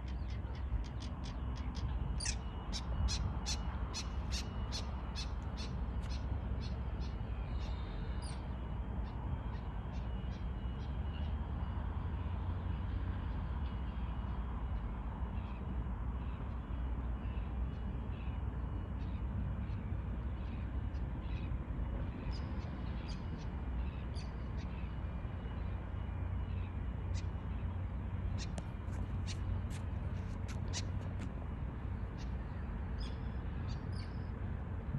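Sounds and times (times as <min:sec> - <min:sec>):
steady low rumble: 0:13.9 - 0:34.9.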